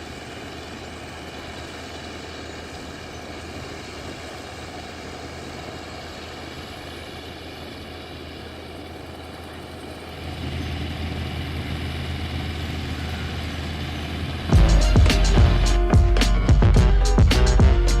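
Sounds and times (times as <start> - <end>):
farm machinery engine running: 0.0 - 18.0
music: 14.5 - 18.0.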